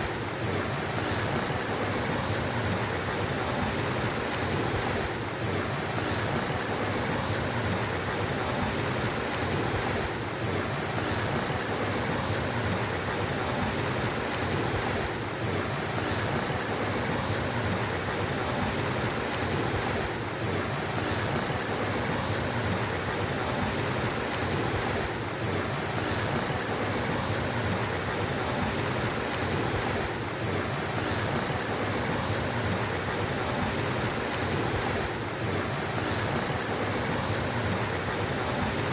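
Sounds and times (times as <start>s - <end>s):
mountain stream rushing: 0.0s - 38.9s.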